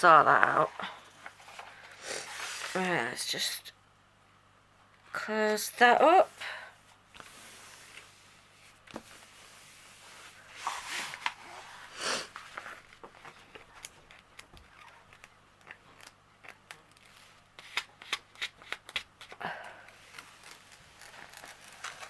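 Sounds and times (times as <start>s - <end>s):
plastic film rustling and crinkling: 7.2s - 19.0s, 19.9s - 22.0s.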